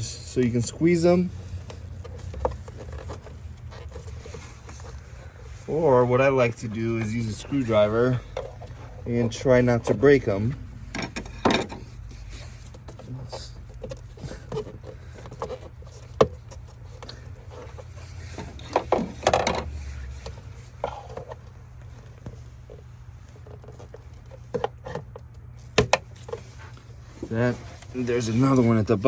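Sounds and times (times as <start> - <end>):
plastic clicks and scrapes: 1.3 - 5.6, 11.0 - 28.4.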